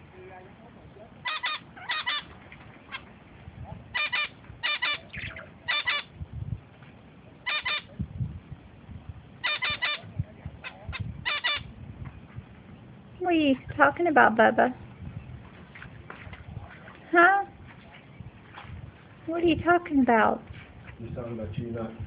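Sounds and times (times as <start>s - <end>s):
bird honking calls: 1.2s - 3.2s, 3.9s - 6.1s, 7.4s - 7.9s, 9.4s - 11.7s.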